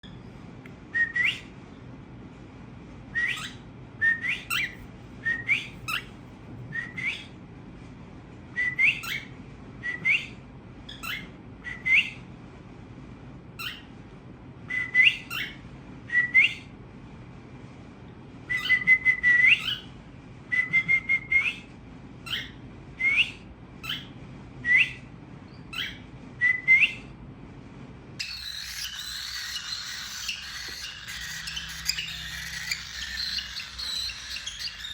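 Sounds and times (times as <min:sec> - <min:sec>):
cockatiel whistling: 0:03.2 - 0:06.1, 0:08.6 - 0:09.3, 0:14.8 - 0:15.6, 0:18.5 - 0:19.9, 0:28.2 - 0:34.9.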